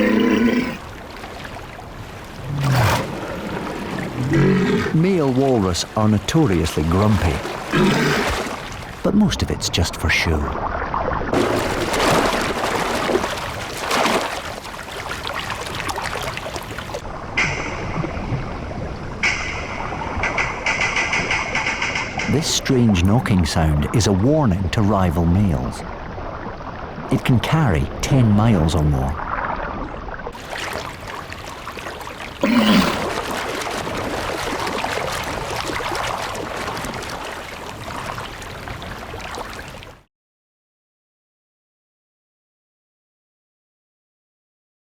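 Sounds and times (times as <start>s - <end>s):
walrus grunt: 0.0s - 0.8s, 2.5s - 3.3s, 4.2s - 5.0s, 7.7s - 8.4s, 32.4s - 33.1s
water splashing and churning: 0.0s - 40.0s
loud splash: 11.4s - 18.9s, 32.4s - 38.4s.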